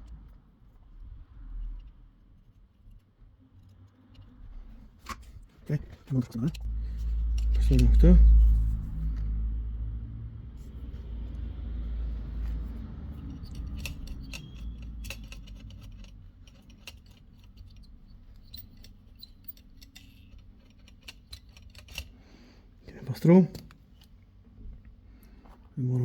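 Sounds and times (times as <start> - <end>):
low hum: 5.3 - 20.3
small metal tools tapping: 13.2 - 22.1.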